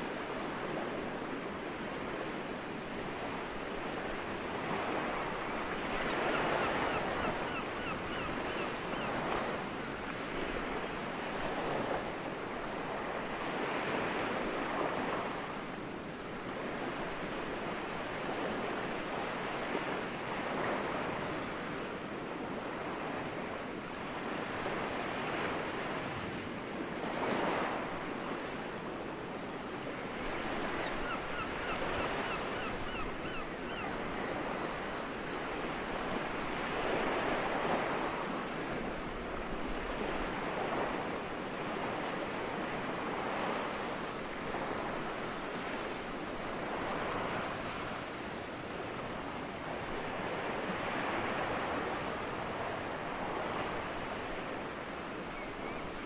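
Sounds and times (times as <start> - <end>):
bird calls: 5.9 - 9.5, 30.6 - 35.1.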